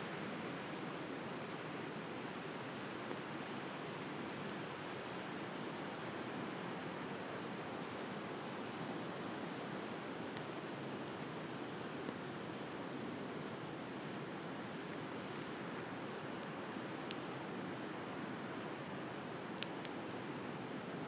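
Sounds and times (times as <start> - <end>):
wood fire crackling: 10.3 - 20.5.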